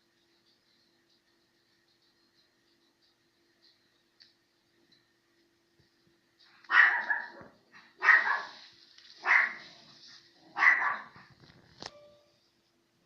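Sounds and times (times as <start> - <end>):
dog barking: 6.6 - 8.6, 9.2 - 9.7, 10.5 - 11.3.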